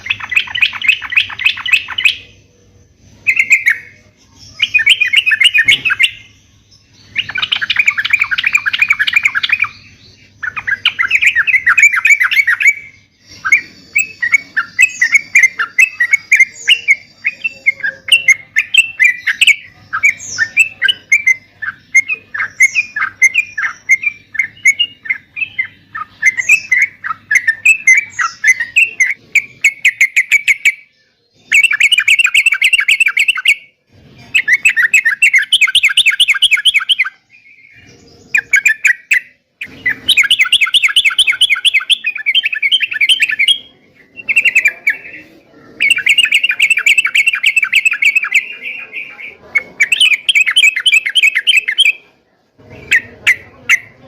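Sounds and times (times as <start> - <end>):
bird chattering and trilling: 0.0 - 54.0.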